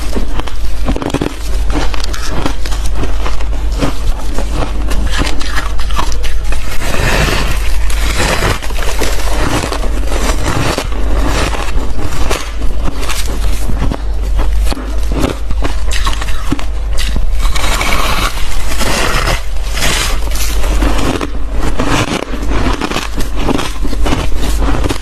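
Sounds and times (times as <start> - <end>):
chewing ice with squeaky crunches: 0.9 - 3.0, 3.8 - 13.3, 15.1 - 21.2.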